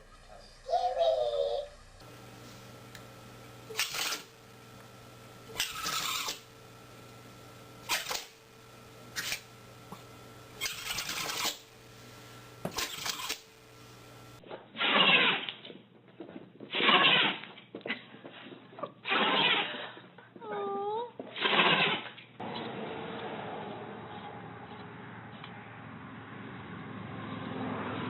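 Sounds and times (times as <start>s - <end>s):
pet sneezing: 16.7s - 17.4s, 19.0s - 19.9s.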